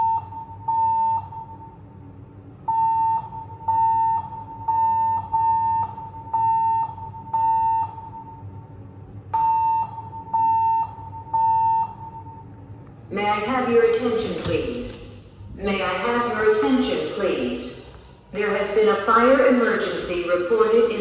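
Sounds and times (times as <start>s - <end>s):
fire alarm pulsing tone: 0.0s - 1.9s, 2.6s - 8.7s, 9.3s - 12.6s.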